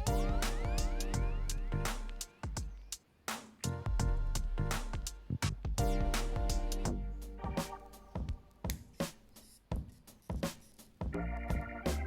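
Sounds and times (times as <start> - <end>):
rising pitched sweep: 0.0 - 2.4
electronic music with steady beat: 0.0 - 12.0.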